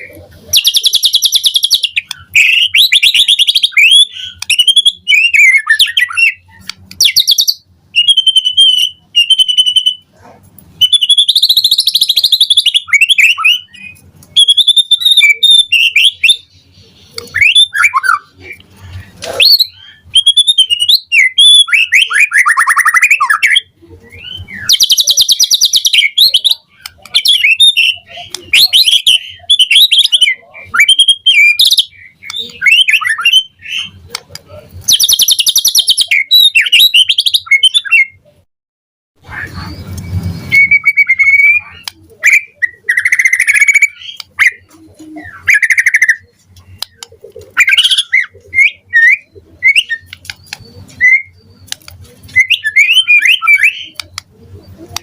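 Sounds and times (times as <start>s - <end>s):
bird singing whistles and trills: 0.0s - 10.1s, 10.8s - 18.5s, 19.3s - 34.0s, 34.8s - 38.2s, 39.3s - 55.0s.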